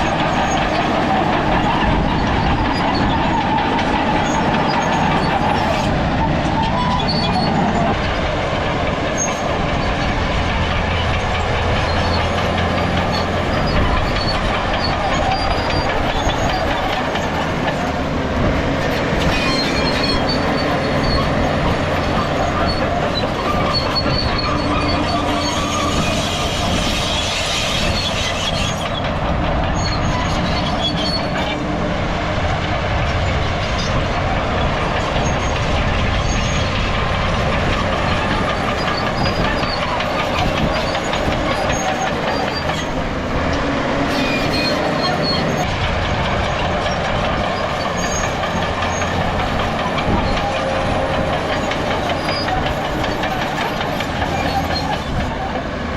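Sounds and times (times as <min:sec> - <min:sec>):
high track squeals: 0:00.0 - 0:55.7
diesel engine under load: 0:00.0 - 0:55.9
steel tracks clanking: 0:00.0 - 0:55.9.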